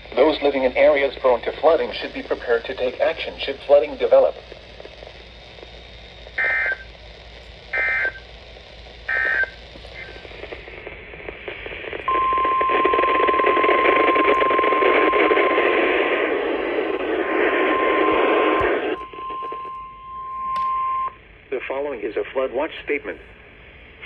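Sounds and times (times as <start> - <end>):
radio static hiss: 0.0 - 20.0, 21.1 - 24.0
warbling digital data tones: 6.4 - 6.9, 7.7 - 8.3, 9.0 - 10.6.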